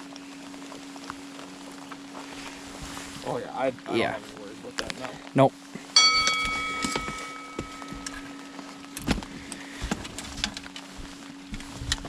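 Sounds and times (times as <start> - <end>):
steady low hum: 0.0 - 12.0
gear knocks and clicks: 8.9 - 12.0.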